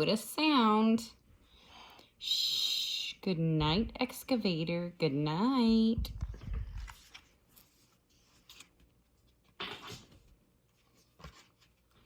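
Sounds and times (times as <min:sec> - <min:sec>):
book page turning: 0:06.2 - 0:12.0.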